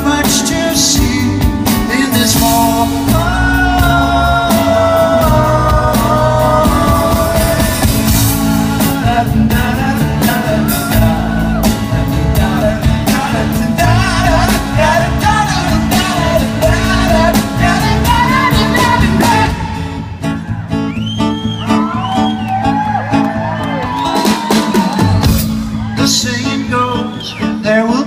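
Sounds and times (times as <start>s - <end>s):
drums: 0.0s - 28.0s
live rock band playing: 0.0s - 28.0s.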